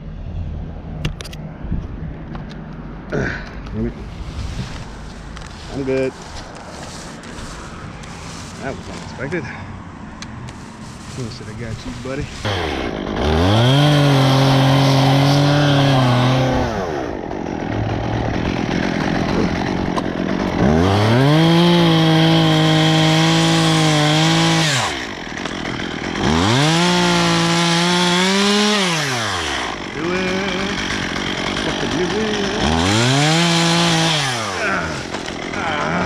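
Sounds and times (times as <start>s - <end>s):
chainsaw revving and idling: 4.9s - 9.4s, 11.0s - 36.0s.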